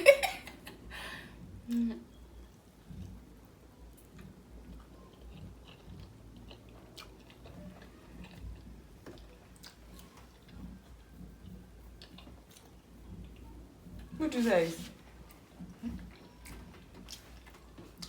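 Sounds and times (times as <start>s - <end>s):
person chewing: 2.8s - 14.2s, 14.9s - 18.0s.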